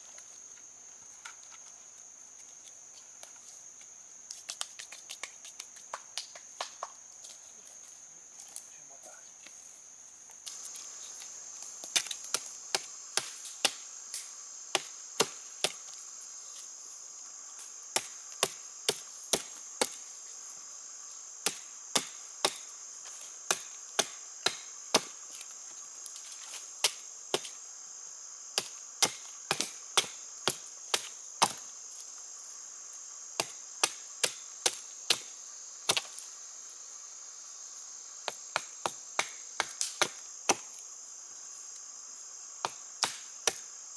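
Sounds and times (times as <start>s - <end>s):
insects buzzing: 0.0s - 43.9s
blade chopping wood: 11.8s - 15.9s, 17.9s - 20.0s, 21.4s - 22.7s, 23.5s - 25.2s, 28.6s - 31.7s, 33.4s - 35.3s, 35.9s - 36.2s, 38.3s - 40.8s, 42.6s - 43.6s.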